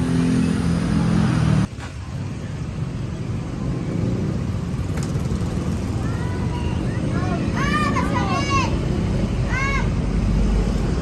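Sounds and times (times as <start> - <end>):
vehicle engine droning: 0.0 - 1.7
road traffic rumble: 0.0 - 11.0.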